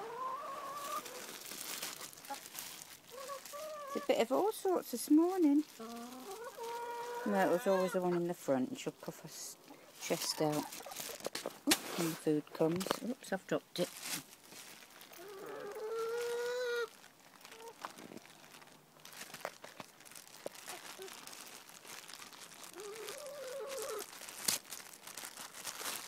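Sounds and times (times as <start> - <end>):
hens calling: 0.0 - 2.5, 3.1 - 4.5, 5.6 - 8.5, 9.6 - 12.1, 15.1 - 17.8, 22.7 - 24.1.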